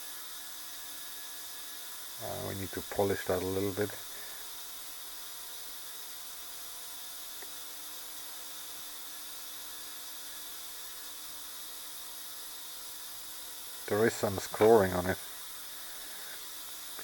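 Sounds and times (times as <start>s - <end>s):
steady hiss: 2.0s - 4.7s, 13.4s - 17.0s.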